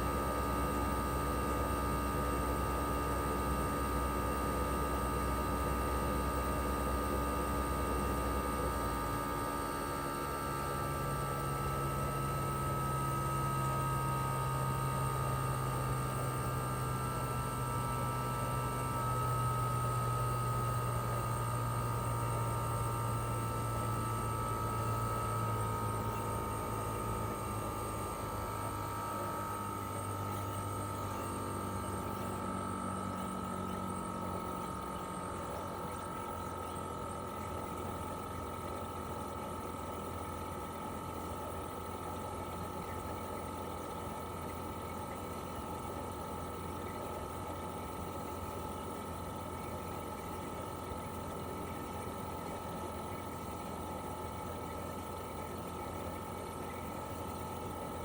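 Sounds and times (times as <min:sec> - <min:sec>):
air conditioner humming with whine: 0:00.0 - 0:58.0.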